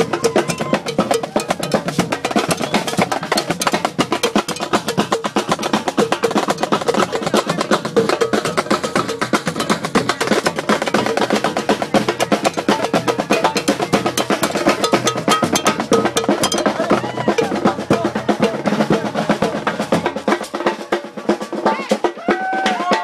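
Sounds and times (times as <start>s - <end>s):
snare and bass drum beating: 0.0s - 23.0s
street band playing: 0.0s - 23.0s.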